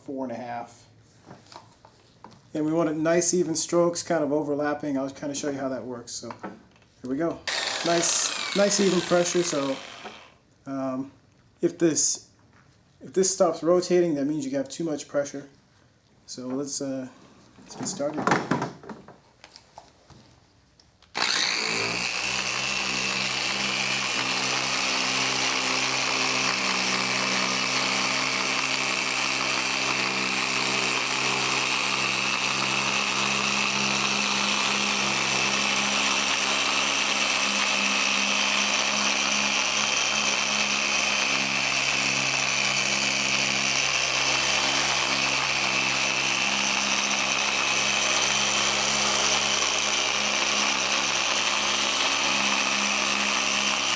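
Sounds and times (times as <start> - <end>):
electric polisher motor whine: 7.5 - 10.4, 21.2 - 53.9.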